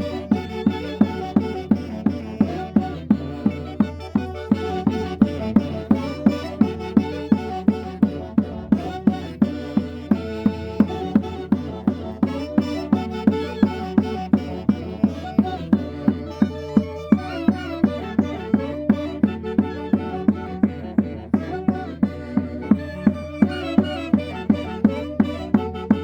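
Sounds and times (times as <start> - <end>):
drum beating steadily: 0.0 - 26.0
sustained melody: 10.6 - 26.0.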